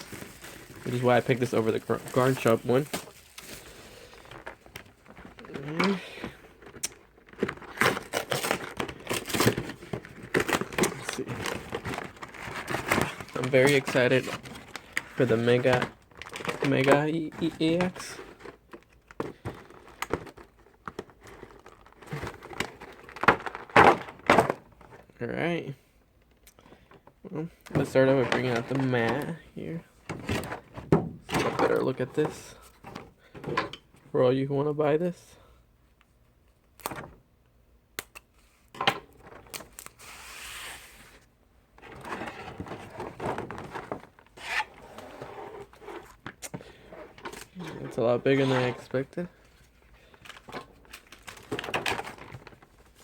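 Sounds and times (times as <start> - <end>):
packaging rustling and crinkling: 0.0 - 24.9, 39.2 - 53.0
scraping rustles: 40.0 - 53.0.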